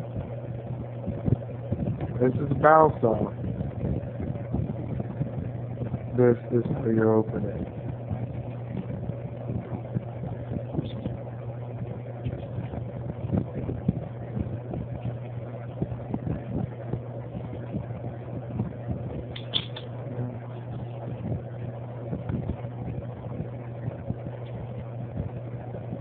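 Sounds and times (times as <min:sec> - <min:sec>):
steady low hum: 0:00.0 - 0:26.0
butterfly knife handles clicking: 0:19.4 - 0:19.9.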